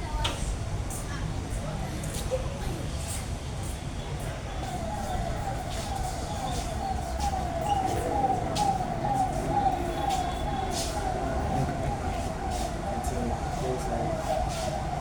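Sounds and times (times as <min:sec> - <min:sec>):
siren-like sweeping tone: 0:04.6 - 0:15.0.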